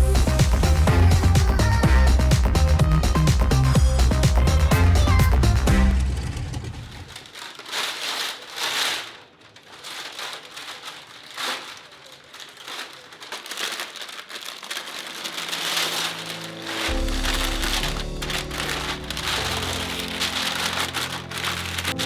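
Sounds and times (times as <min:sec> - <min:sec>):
rain pattering: 0:09.6 - 0:22.0.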